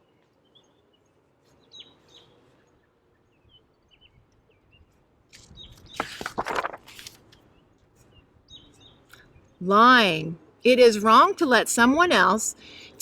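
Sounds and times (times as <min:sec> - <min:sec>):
small birds chirping: 0:00.0 - 0:06.2, 0:07.4 - 0:09.6.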